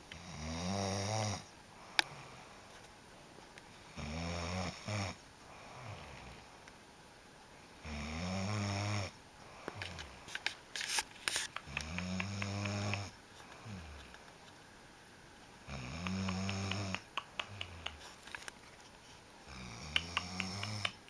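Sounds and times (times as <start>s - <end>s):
crackling clicks: 9.8s - 14.4s, 15.9s - 18.6s, 19.9s - 21.0s
person snoring: 11.6s - 14.0s, 15.7s - 18.0s, 19.5s - 21.0s.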